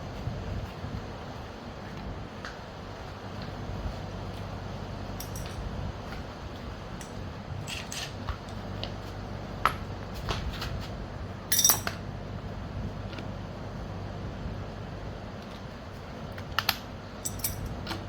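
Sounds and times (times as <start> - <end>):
low steady hum: 0.0 - 18.0
metal tools clinking: 5.2 - 5.7, 7.0 - 8.2, 11.5 - 12.0, 17.2 - 18.0.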